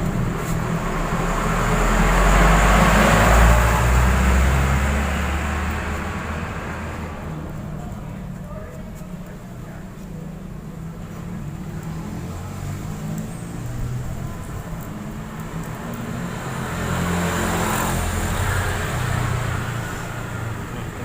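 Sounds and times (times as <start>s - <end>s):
passing vehicle rumbling: 0.0s - 21.0s.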